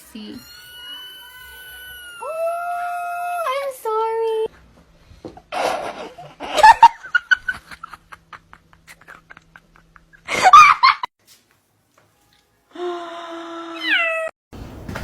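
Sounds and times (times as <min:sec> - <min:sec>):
person laughing: 0:05.5 - 0:11.1
cat meowing: 0:13.7 - 0:14.3.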